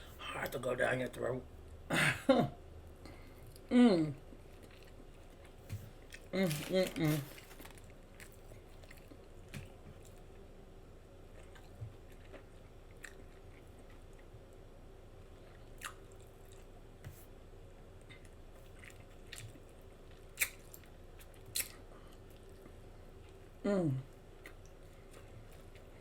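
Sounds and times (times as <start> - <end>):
person chewing with mouth open: 3.4 - 6.4, 11.2 - 14.4, 15.3 - 16.7, 18.0 - 23.4.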